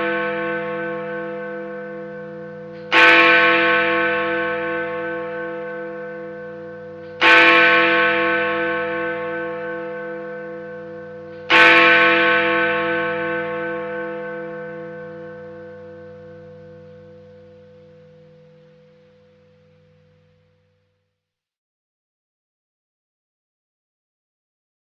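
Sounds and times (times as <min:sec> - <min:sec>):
great bell ringing: 0:00.0 - 0:20.6
low wavering hum: 0:14.2 - 0:21.2.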